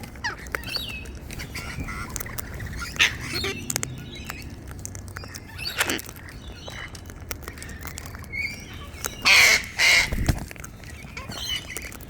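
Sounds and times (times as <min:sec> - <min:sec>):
small clicks: 0:00.0 - 0:12.0
cockatoo squawking: 0:00.2 - 0:04.0, 0:08.4 - 0:10.4.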